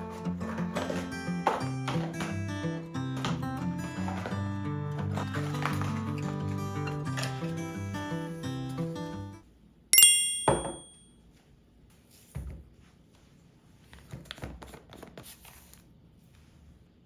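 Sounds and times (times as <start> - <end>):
sharp ringing clink: 10.0 - 11.1.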